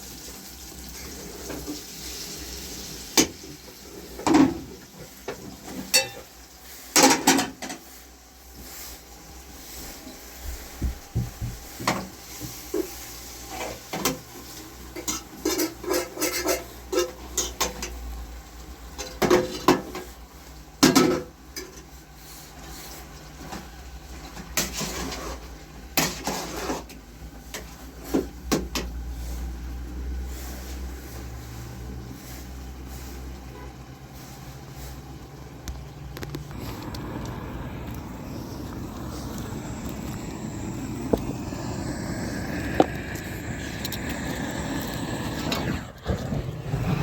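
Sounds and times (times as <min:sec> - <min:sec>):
steady low hum: 0:36.3 - 0:47.0.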